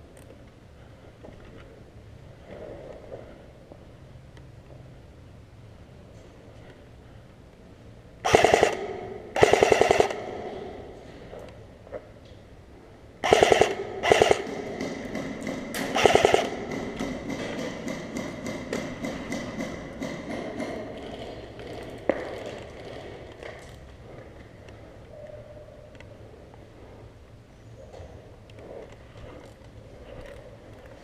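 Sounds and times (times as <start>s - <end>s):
airsoft gun bursts: 8.2s - 10.4s, 13.2s - 17.5s.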